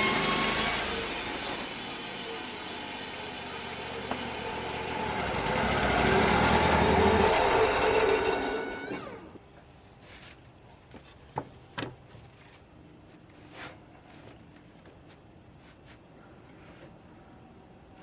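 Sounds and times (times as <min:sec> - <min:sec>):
bandsaw cutting wood: 0:00.0 - 0:09.4.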